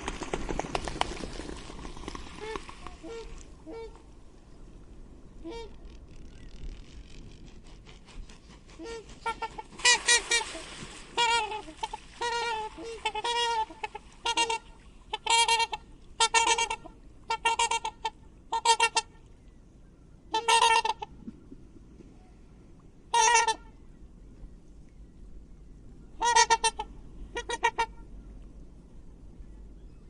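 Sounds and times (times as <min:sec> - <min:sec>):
swans trumpeting: 0:08.8 - 0:19.1.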